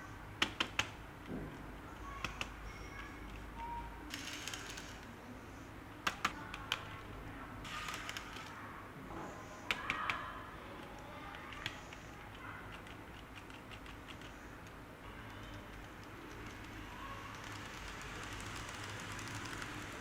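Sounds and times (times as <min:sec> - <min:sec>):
sharp clicks and taps: 0:10.8 - 0:14.8.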